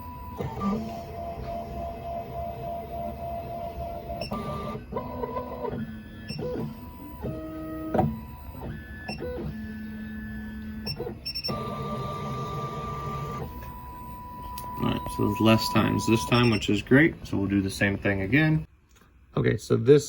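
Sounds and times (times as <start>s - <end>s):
stepper motors whining: 0.0s - 18.0s.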